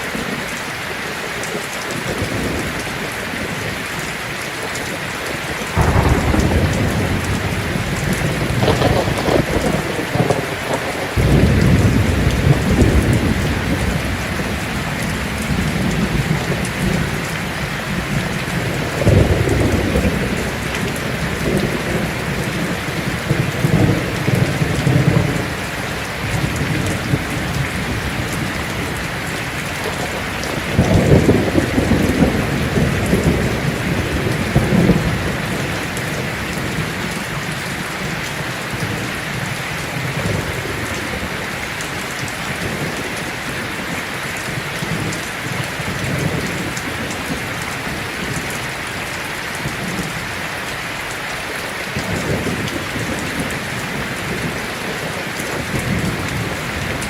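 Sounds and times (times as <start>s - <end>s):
heavy rain on a tin roof: 0.0s - 57.0s
thunder rumbling: 4.8s - 50.4s.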